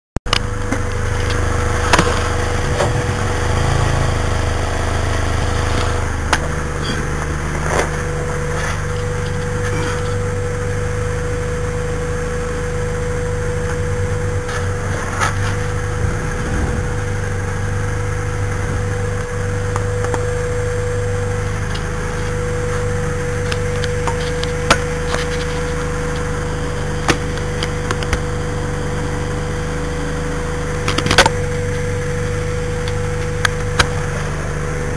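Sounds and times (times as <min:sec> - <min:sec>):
car engine idling: 0:00.3 - 0:34.9
sharp engine knocks: 0:27.0 - 0:28.2.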